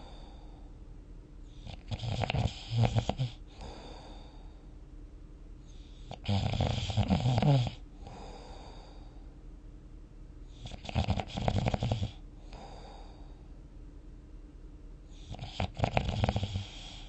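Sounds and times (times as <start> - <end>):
soft breathing: 0.0 - 0.8, 3.3 - 4.8, 5.6 - 6.3, 7.8 - 9.4, 12.1 - 13.6
person snoring: 1.6 - 4.6, 6.1 - 9.1, 10.6 - 13.4, 15.2 - 17.0.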